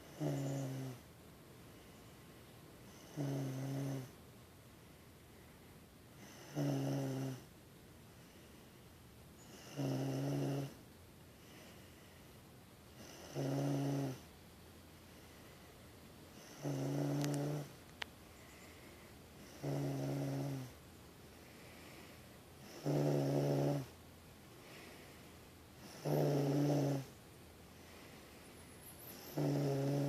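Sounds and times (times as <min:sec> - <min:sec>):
person snoring: 0:00.1 - 0:01.0, 0:02.9 - 0:04.1, 0:06.2 - 0:07.5, 0:09.5 - 0:10.8, 0:13.0 - 0:14.2, 0:16.4 - 0:17.7, 0:19.4 - 0:20.7, 0:22.6 - 0:24.0, 0:25.8 - 0:27.1, 0:29.1 - 0:30.0.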